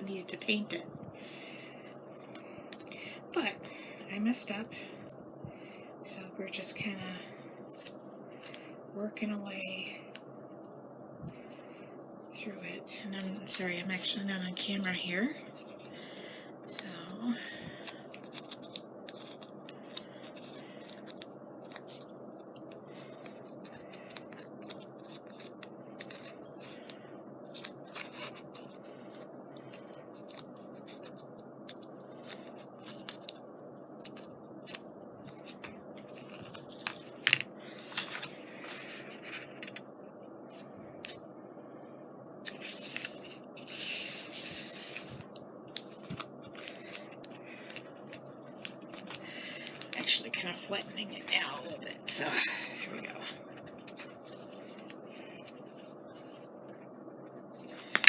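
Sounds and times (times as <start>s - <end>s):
steady low hum: 0.0s - 58.0s
paper clicks and scrapes: 18.1s - 33.4s, 42.5s - 50.0s
rustling paper scrape: 34.6s - 39.8s, 42.5s - 47.0s, 53.6s - 56.7s.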